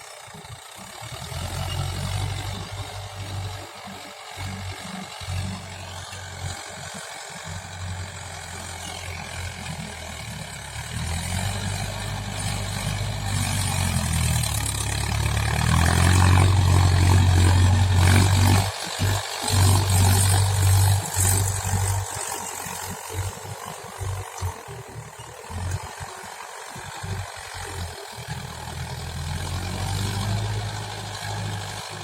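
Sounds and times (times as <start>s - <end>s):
tractor diesel engine running: 0.0s - 32.0s.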